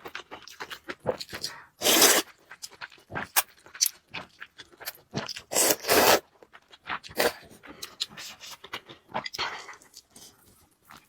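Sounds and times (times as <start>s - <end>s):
loud slurp: 1.8s - 2.2s, 5.5s - 6.2s, 7.2s - 7.4s.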